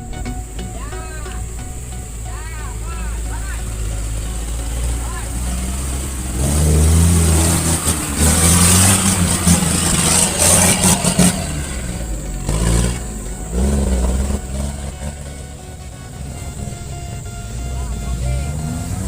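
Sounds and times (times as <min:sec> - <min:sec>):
loud rushing noise: 0:00.0 - 0:19.0
vehicle engine revving: 0:00.0 - 0:19.0.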